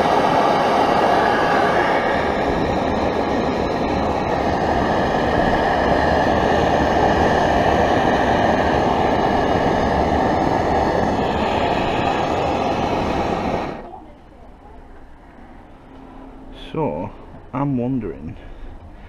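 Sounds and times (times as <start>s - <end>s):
camping stove burner hissing: 0.0s - 13.9s.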